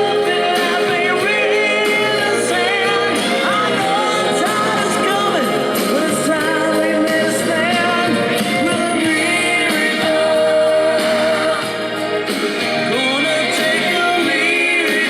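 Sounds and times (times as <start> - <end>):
rock song with vocals from vinyl: 0.0 - 15.0.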